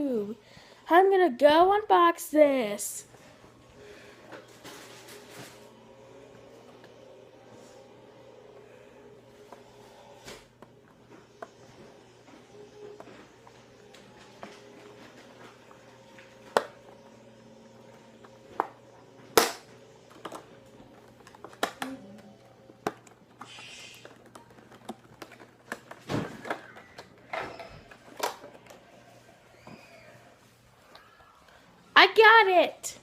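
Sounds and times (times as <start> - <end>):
packaging clicking and snapping: 19.4 - 28.9.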